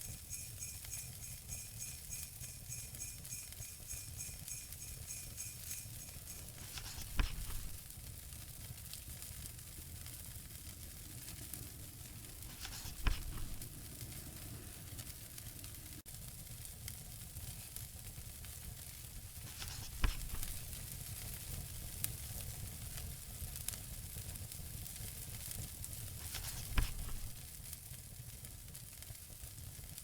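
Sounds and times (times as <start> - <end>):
soft crackles: 0.2 - 8.0, 8.8 - 16.0, 19.3 - 22.3, 25.4 - 27.7.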